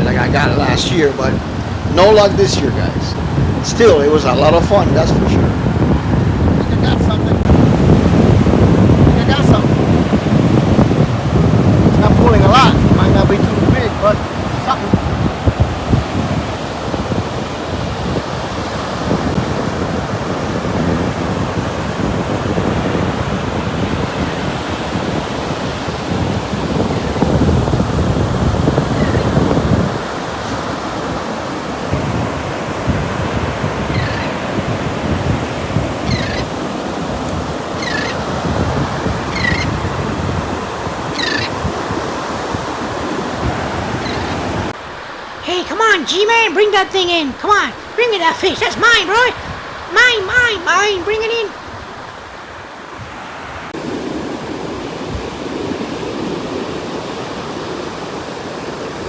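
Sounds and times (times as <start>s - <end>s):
ocean surf: 0.0s - 59.0s
wind buffeting microphone: 0.0s - 59.0s
gull squawking: 33.8s - 34.6s, 35.9s - 36.7s, 37.5s - 40.0s, 41.0s - 41.9s, 43.9s - 44.6s.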